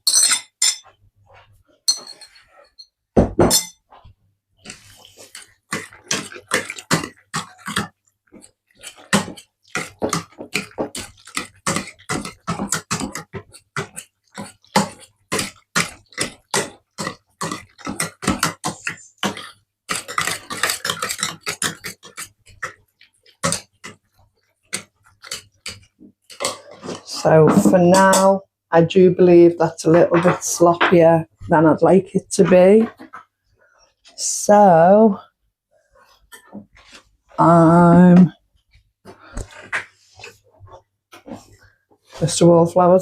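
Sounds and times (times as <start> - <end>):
hand masher mashing wet food: 3.9 - 28.4, 29.3 - 35.1.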